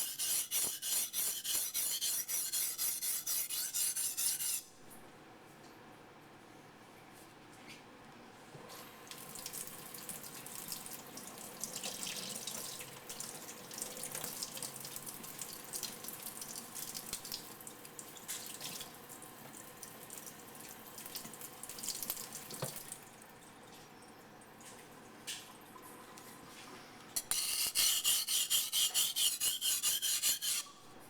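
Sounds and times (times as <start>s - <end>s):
knife rubbing on whetstone: 0.0s - 4.7s, 27.2s - 30.8s.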